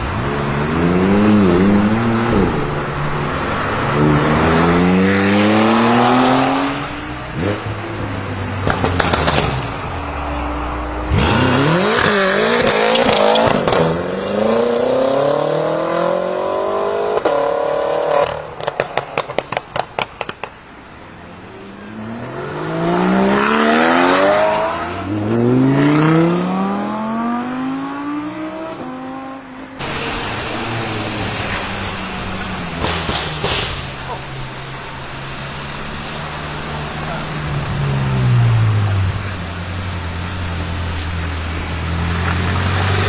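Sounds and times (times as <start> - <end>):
exhaust pops and crackles: 0.0 - 14.0, 18.0 - 20.9, 29.8 - 43.0
car engine accelerating hard: 0.0 - 20.4, 21.2 - 43.0.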